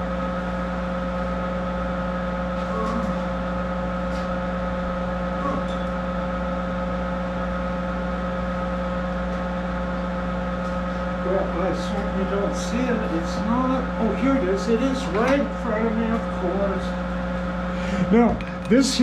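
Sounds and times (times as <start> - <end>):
lathe humming idle: 0.0 - 19.0.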